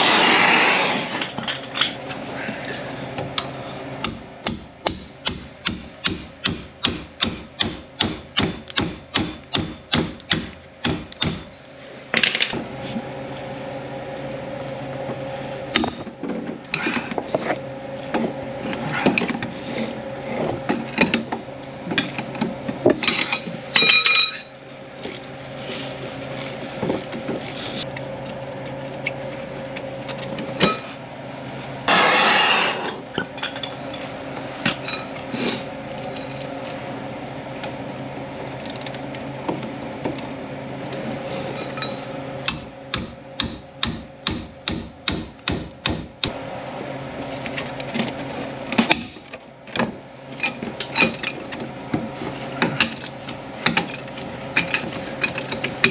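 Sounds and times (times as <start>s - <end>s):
loud scraping noise: 0.0s - 1.4s, 31.9s - 33.0s
metal tools clinking: 23.1s - 24.5s.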